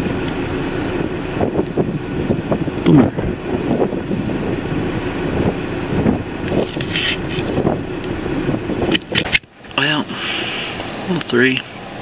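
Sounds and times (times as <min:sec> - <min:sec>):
wind buffeting microphone: 0:00.0 - 0:09.4.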